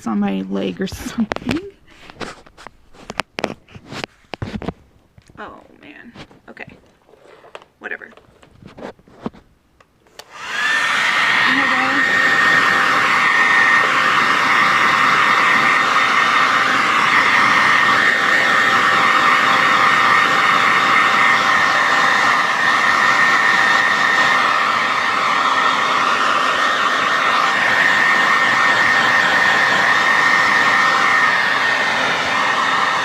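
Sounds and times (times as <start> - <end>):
hair dryer blowing with whine: 10.1 - 33.0.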